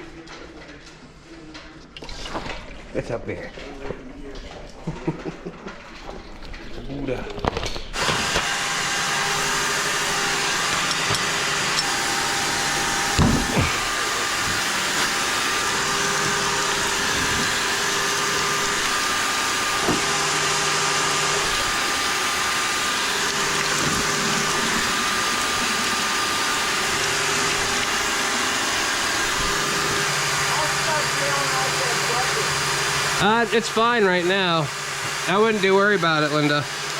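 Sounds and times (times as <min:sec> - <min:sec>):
small electric motor whirring: 0:08.0 - 0:36.9
knocks: 0:13.2 - 0:13.8.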